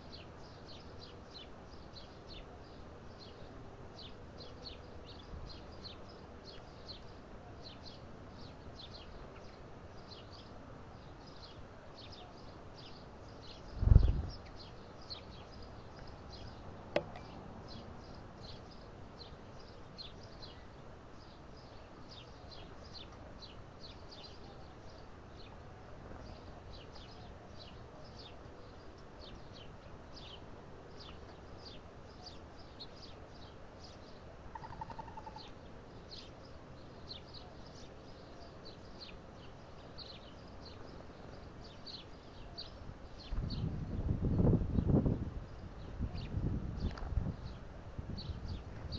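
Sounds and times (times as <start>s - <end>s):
small birds chirping: 0.0s - 48.9s.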